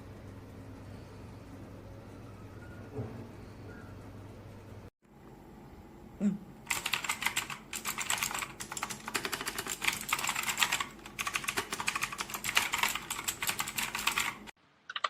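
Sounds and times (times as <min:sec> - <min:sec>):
mechanical keyboard typing: 0:06.7 - 0:15.0.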